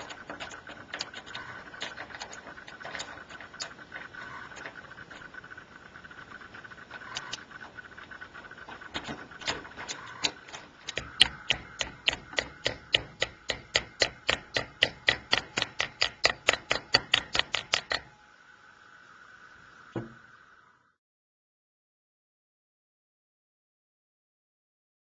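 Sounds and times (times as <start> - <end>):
steady high hum: 0.0 - 21.0
hammer tapping on metal: 10.2 - 18.1.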